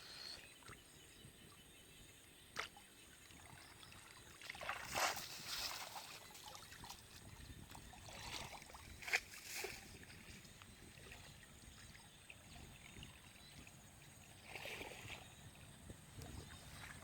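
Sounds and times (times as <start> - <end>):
water splashing: 3.3 - 13.2
sharp water slap: 4.5 - 6.1.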